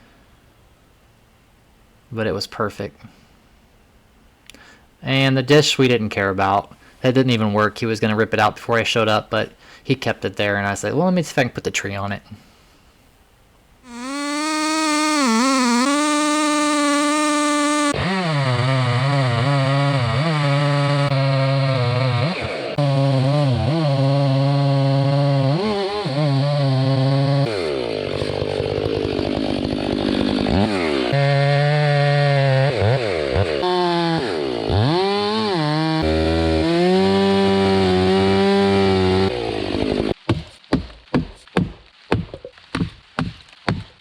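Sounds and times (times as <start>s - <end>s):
chainsaw cutting wood: 13.9s - 40.2s.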